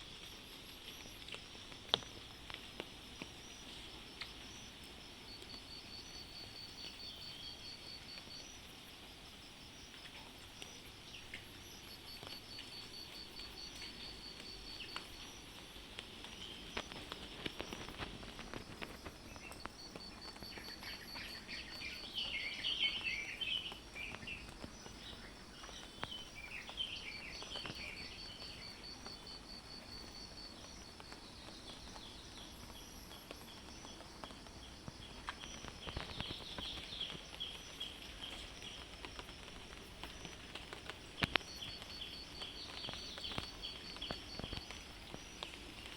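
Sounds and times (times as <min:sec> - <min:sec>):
insect trill: 0:00.0 - 0:45.9
patter of drops: 0:10.0 - 0:23.0, 0:23.6 - 0:45.9
birds chirping: 0:18.8 - 0:29.4, 0:34.6 - 0:45.9.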